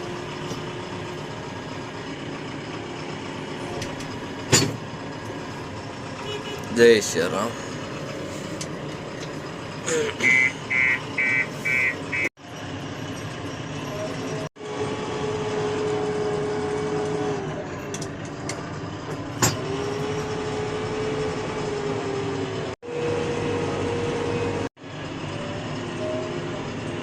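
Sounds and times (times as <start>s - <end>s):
diesel engine and hydraulics whining: 0.0s - 27.0s
reversing alarm beeping: 10.3s - 12.3s.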